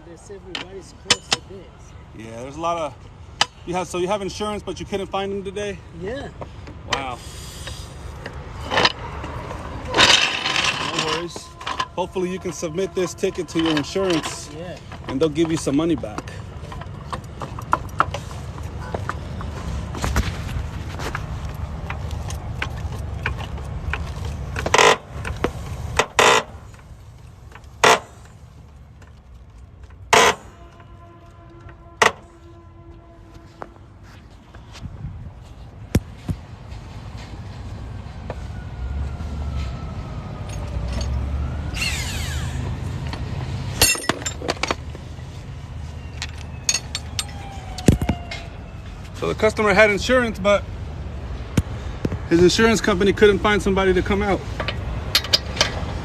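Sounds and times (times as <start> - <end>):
low vehicle rumble: 0.0 - 56.0
light metallic clicks and rattles: 54.6 - 56.0.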